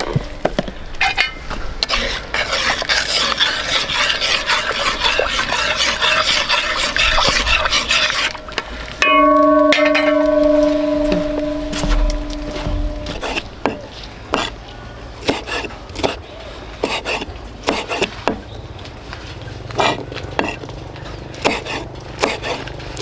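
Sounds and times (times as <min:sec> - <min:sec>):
steady ringing tone: 0:08.4 - 0:13.4.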